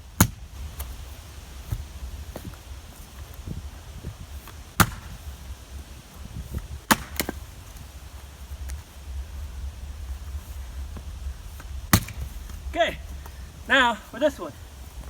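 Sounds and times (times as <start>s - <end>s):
axe chopping wood: 0.2s - 0.5s, 4.8s - 5.2s, 6.9s - 7.4s, 11.9s - 12.3s.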